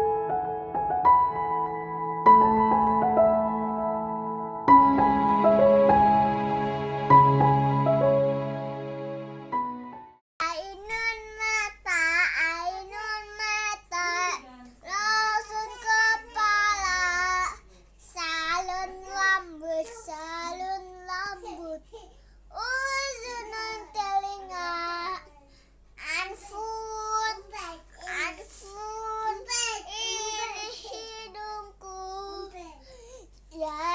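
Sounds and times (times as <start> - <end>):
young child singing: 10.4 - 33.9.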